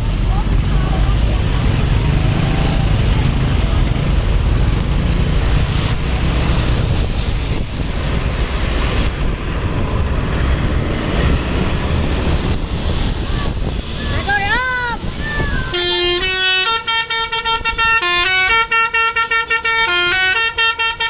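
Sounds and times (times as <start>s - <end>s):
wind buffeting microphone: 0.0s - 16.2s
road traffic noise: 0.0s - 21.0s.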